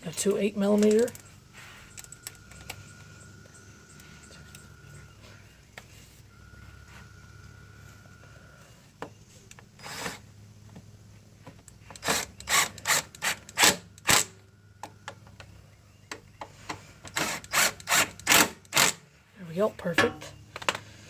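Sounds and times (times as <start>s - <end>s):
hand ratchet rasping: 11.8s - 14.3s, 17.0s - 19.0s.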